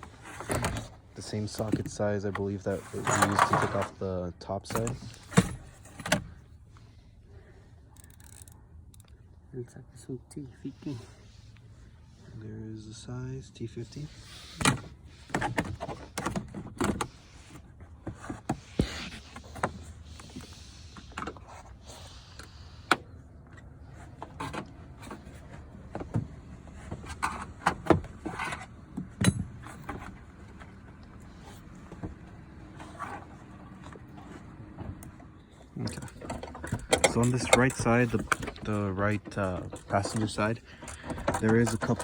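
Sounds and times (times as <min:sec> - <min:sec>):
hand tools clicking and clinking: 0:35.8 - 0:42.0.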